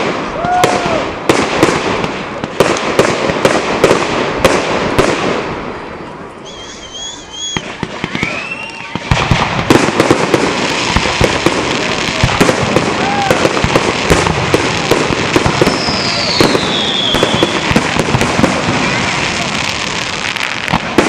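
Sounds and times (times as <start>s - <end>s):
fireworks bangs and crackling: 0.0s - 21.0s
whistling firework falling in pitch: 6.4s - 10.2s, 11.0s - 21.0s.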